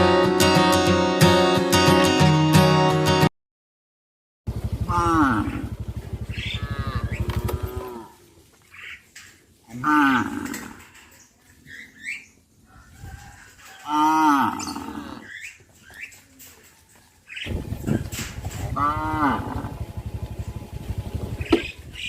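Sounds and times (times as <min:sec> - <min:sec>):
cows mooing: 0:04.8 - 0:08.3, 0:09.7 - 0:11.0, 0:13.8 - 0:15.4, 0:18.4 - 0:21.1.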